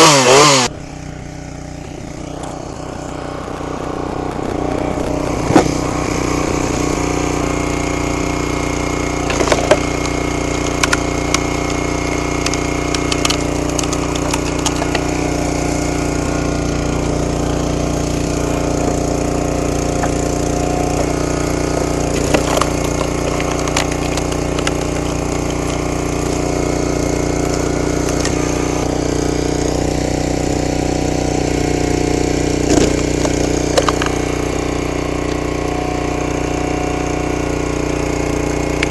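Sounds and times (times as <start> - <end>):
log splitter engine running: 0.0 - 38.9
firewood cracking as it splits: 9.0 - 30.0, 32.4 - 35.6.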